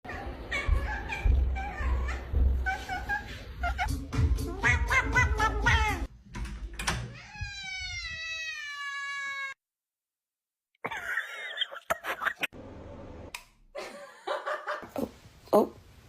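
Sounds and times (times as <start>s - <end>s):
cat meowing: 0.1s - 3.9s, 4.5s - 6.1s, 7.1s - 9.6s.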